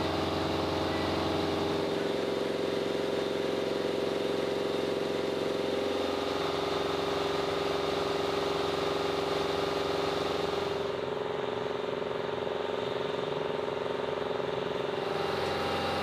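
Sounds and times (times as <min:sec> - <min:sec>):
engine drone: 0:00.0 - 0:16.0.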